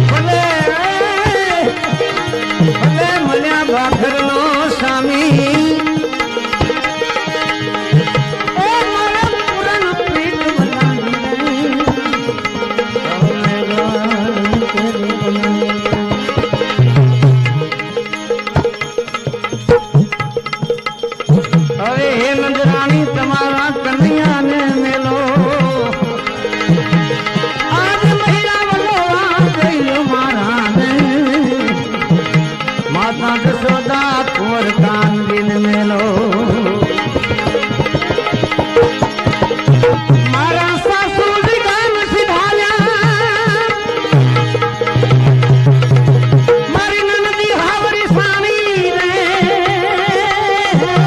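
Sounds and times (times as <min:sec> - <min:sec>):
hand drum rhythm: 0:00.0 - 0:51.0
sliding wavering melody: 0:00.0 - 0:51.0
hand drum strokes: 0:34.8 - 0:41.6.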